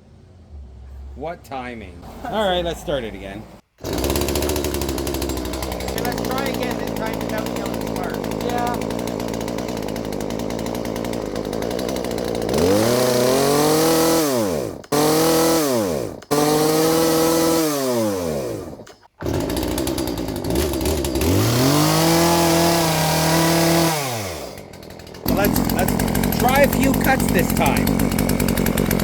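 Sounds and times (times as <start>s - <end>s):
chainsaw idling and revving: 3.8s - 29.0s.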